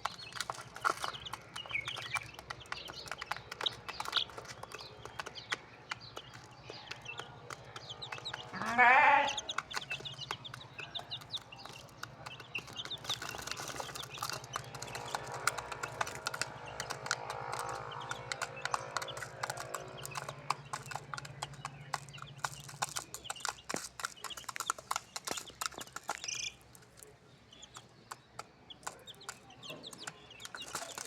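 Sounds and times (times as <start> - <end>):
chicks cheeping: 0.0 - 31.0
wavering bleat-like animal call: 8.5 - 9.4.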